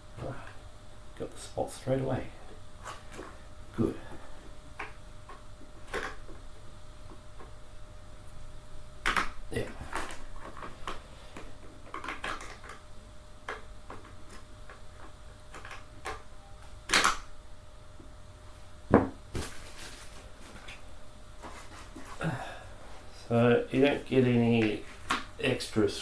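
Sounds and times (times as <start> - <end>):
chair parts clicking and knocking: 11.8 - 12.8, 13.5 - 16.2.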